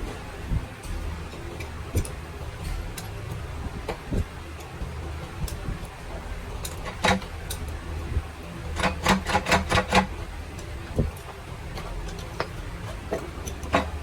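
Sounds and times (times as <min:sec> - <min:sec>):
low steady hum: 0:00.0 - 0:14.0
metal-on-metal knocks: 0:13.2 - 0:14.0.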